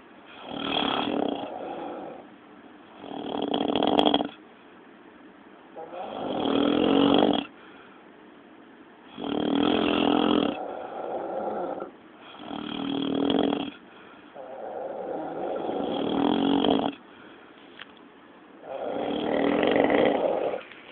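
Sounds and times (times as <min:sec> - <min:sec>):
loud snoring: 0:00.3 - 0:02.2, 0:03.0 - 0:04.4, 0:05.8 - 0:07.6, 0:09.1 - 0:13.8, 0:14.4 - 0:17.0, 0:18.6 - 0:20.7.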